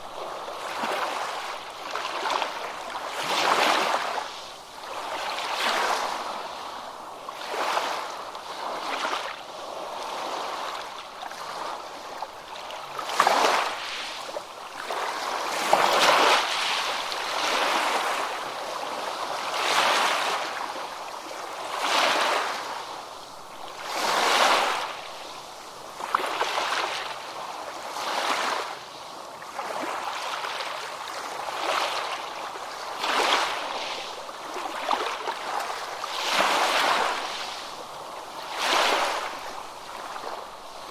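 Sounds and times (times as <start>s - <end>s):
ocean waves crashing: 23.6s - 27.1s, 32.7s - 40.9s.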